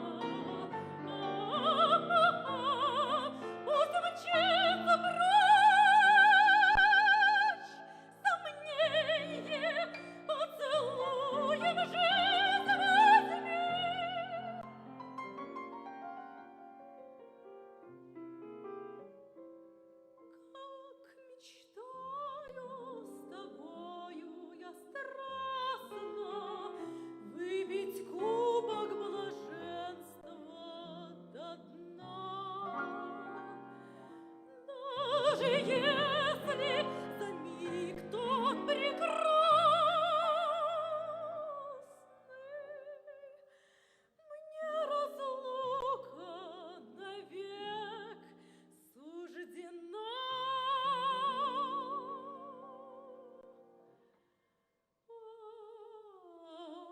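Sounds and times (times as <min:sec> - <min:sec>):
piano accompaniment: 0:00.0 - 0:07.7, 0:08.3 - 0:20.3, 0:22.6 - 0:41.7
operatic singing: 0:00.0 - 0:14.7, 0:34.6 - 0:42.8.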